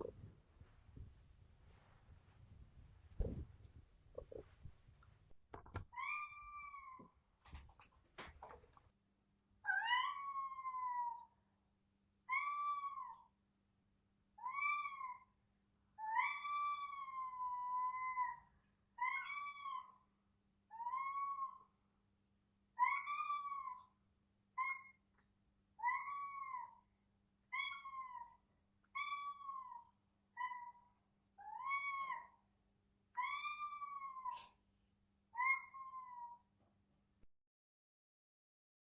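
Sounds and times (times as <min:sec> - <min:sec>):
cat meowing: 0:05.9 - 0:07.1, 0:29.0 - 0:32.4, 0:33.2 - 0:34.5, 0:35.4 - 0:36.4.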